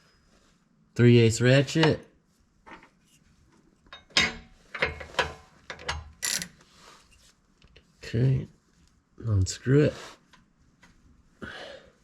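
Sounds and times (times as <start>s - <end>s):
ratchet clicking: 5.8s - 6.6s.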